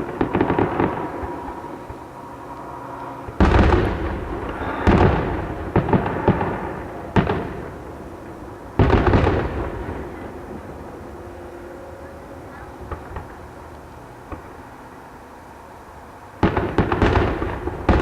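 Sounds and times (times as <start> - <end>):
fireworks booms: 0.0 - 2.0, 3.2 - 10.4, 16.4 - 18.0.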